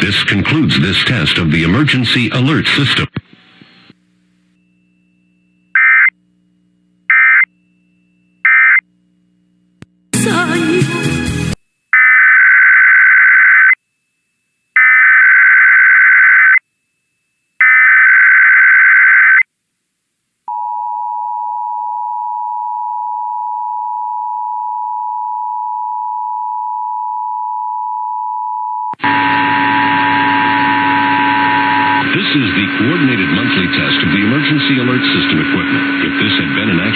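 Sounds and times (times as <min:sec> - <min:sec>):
two-tone attention signal: 0:28.8 - 0:36.9
loud noisy sound: 0:29.0 - 0:36.9.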